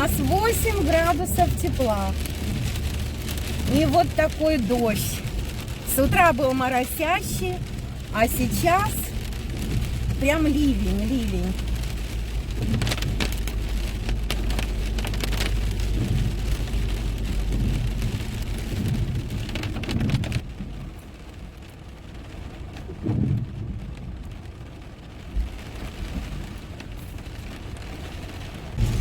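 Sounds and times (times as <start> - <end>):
heavy rain pelting a car: 0.0 - 29.0
road and engine rumble: 0.0 - 29.0
low thumps: 23.0 - 24.0, 28.8 - 29.0.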